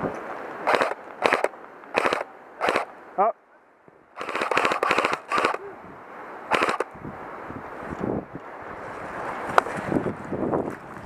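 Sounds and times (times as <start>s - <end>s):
airsoft guns firing bursts: 0.7s - 2.9s, 4.2s - 5.6s, 6.5s - 6.9s.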